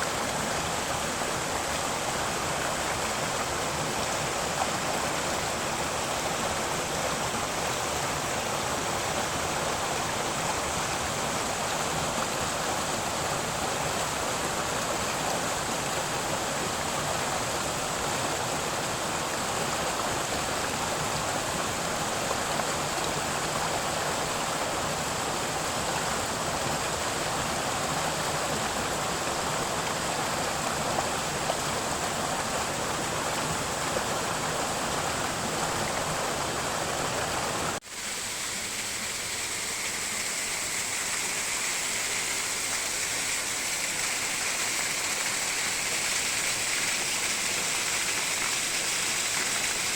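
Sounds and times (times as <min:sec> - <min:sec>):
rushing stream and waterfall: 0:00.0 - 0:49.9.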